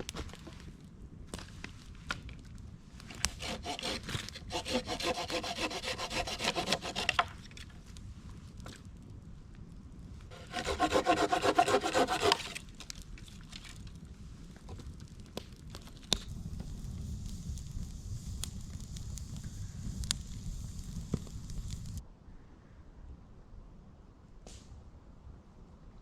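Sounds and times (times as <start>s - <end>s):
hand saw cutting wood: 3.1s - 7.4s, 10.3s - 12.6s.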